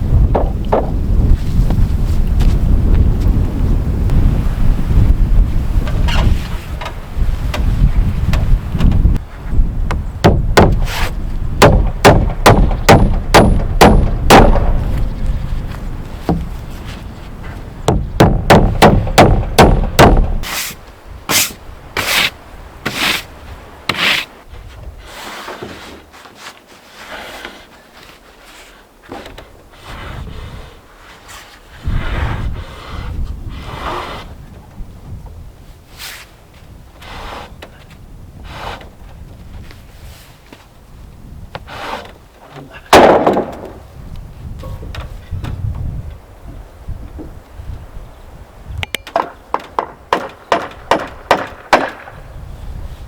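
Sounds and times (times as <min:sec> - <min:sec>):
wind on microphone: 0:00.0 - 0:25.2, 0:29.5 - 0:53.0
sharp knocks on wood: 0:00.3 - 0:01.0, 0:09.9 - 0:10.8, 0:11.6 - 0:14.9, 0:16.3 - 0:16.5, 0:17.9 - 0:20.4, 0:48.8 - 0:52.1.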